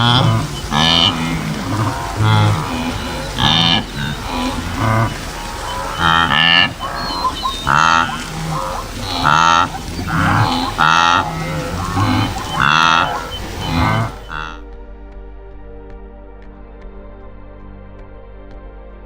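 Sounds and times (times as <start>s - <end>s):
animals honking calls: 0.0s - 14.6s.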